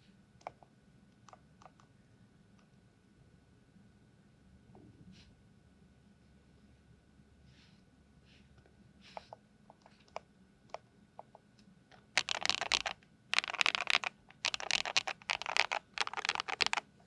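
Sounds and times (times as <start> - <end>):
mechanical keyboard typing: 12.0 - 16.9.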